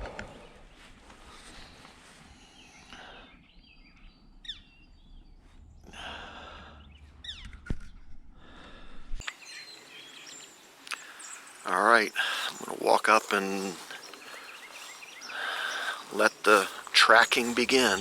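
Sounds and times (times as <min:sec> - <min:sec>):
rustling noise: 0:00.0 - 0:02.6
small birds chirping: 0:00.0 - 0:08.0, 0:09.2 - 0:18.0
steady low rumble: 0:03.3 - 0:09.2.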